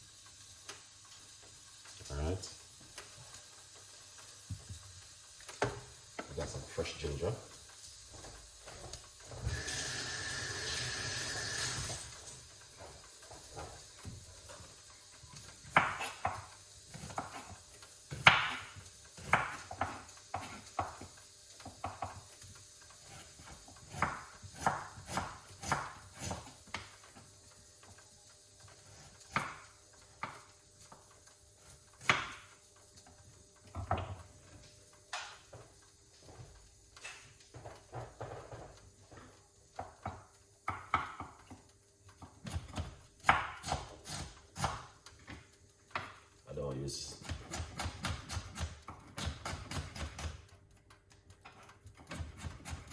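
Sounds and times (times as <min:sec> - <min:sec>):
knife chopping on wooden board: 0:15.6 - 0:22.2, 0:23.0 - 0:26.6, 0:32.0 - 0:32.4, 0:39.8 - 0:41.4, 0:42.2 - 0:44.9, 0:47.2 - 0:50.4, 0:52.0 - 0:52.9.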